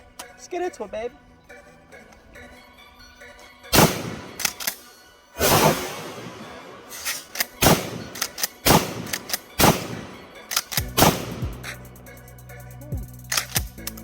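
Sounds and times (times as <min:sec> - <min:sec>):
background music: 0:00.0 - 0:14.0
shotgun shots: 0:03.7 - 0:04.8, 0:05.4 - 0:11.8
smaller cracks: 0:03.8 - 0:11.2.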